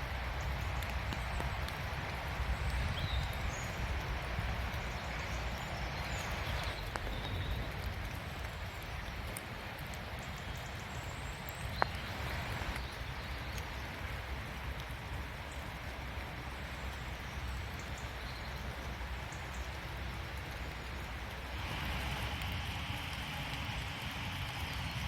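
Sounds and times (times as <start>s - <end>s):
raindrops ticking: 0.0s - 25.0s
steady rain: 0.0s - 25.0s
low rumble: 21.5s - 25.0s.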